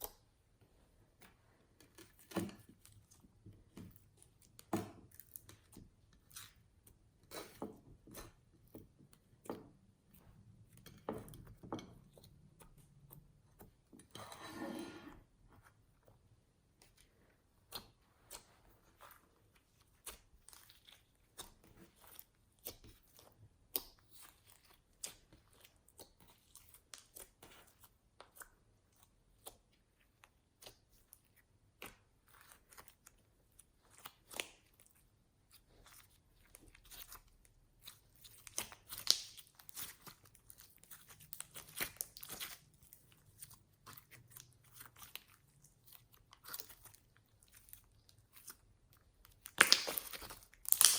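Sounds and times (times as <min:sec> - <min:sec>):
slime sticky pops and clicks: 0:49.5 - 0:50.9.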